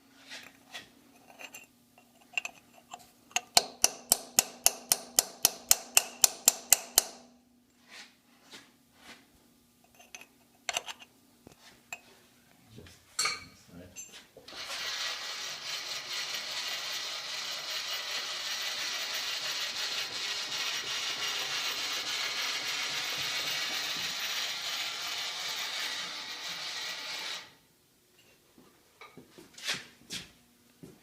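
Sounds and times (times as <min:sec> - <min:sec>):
milling machine metal chatter: 0:14.5 - 0:27.0.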